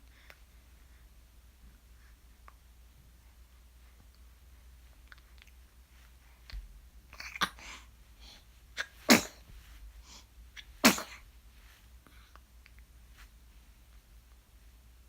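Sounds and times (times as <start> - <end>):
person sneezing: 8.8 - 9.4, 10.8 - 11.2.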